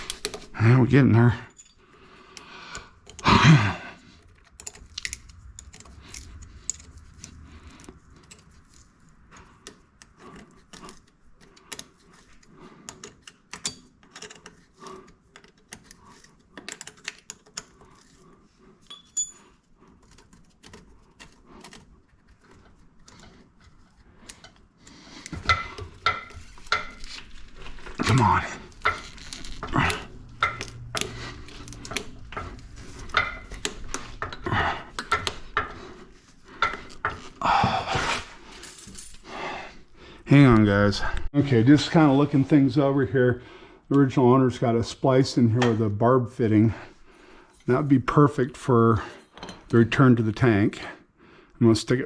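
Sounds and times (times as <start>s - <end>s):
person grunting: 3.2s - 4.0s, 29.6s - 30.1s, 37.4s - 38.2s
metallic clicks of hand tools: 28.7s - 35.8s.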